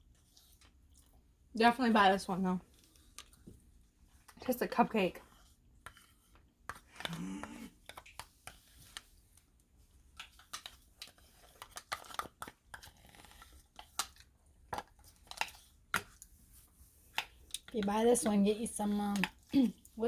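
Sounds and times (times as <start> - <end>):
spoon scraping plastic cup: 4.3 - 9.1, 10.3 - 14.2.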